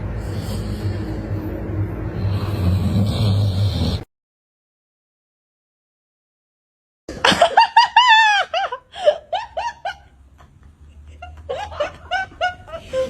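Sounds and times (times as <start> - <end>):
high-pitched laughing cries: 7.4 - 10.1.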